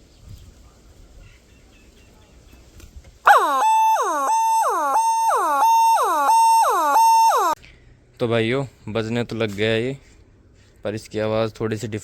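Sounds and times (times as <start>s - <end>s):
siren car horn: 3.3s - 7.6s.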